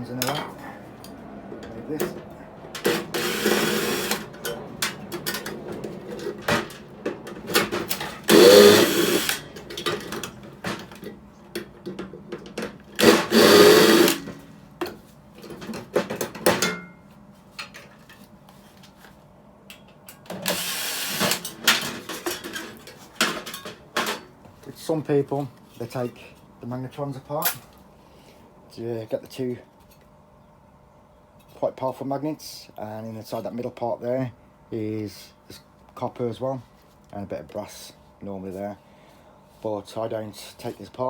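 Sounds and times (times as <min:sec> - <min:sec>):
power drill whirring: 0:02.8 - 0:04.3, 0:07.9 - 0:09.5, 0:13.0 - 0:14.3, 0:20.3 - 0:21.5.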